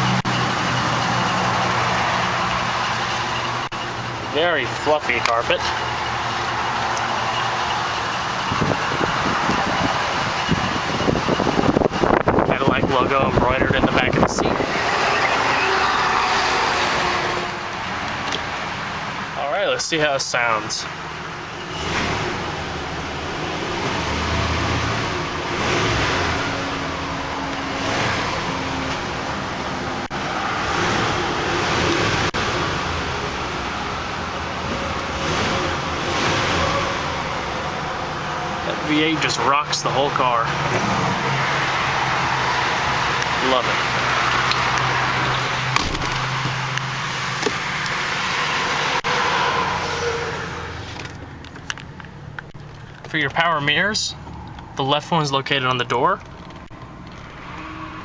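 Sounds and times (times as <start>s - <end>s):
car engine revving: 0.0s - 19.4s, 20.0s - 58.0s
wind noise on microphone: 8.4s - 14.8s.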